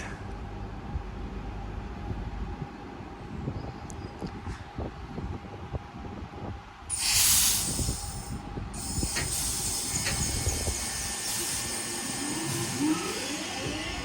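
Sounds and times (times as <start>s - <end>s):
air hiss: 6.9s - 13.8s
train motor whine: 6.9s - 14.0s
train moving off: 6.9s - 14.0s.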